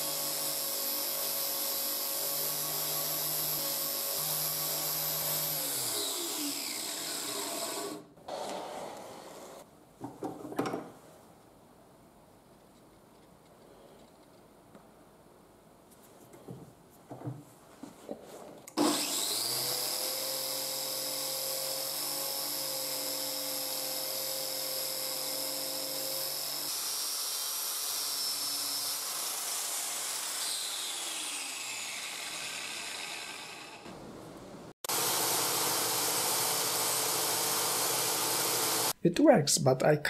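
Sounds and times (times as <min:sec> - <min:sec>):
angle grinder whining: 0:00.0 - 0:09.6, 0:18.8 - 0:33.9, 0:34.8 - 0:39.0.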